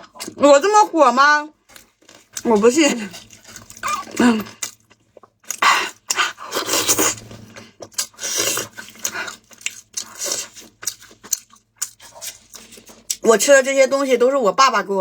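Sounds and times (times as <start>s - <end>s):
person chewing and crunching food: 1.6s - 13.3s.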